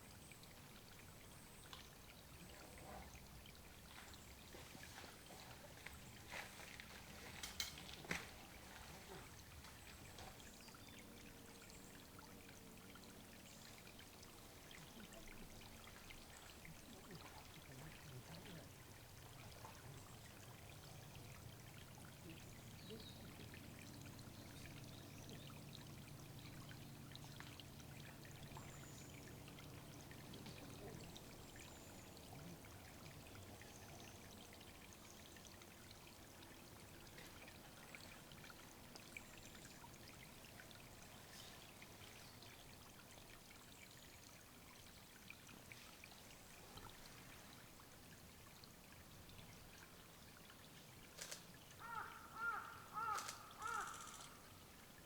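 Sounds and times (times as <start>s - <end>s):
water trickling: 0.0s - 55.0s
faint high bird calls: 51.8s - 54.4s.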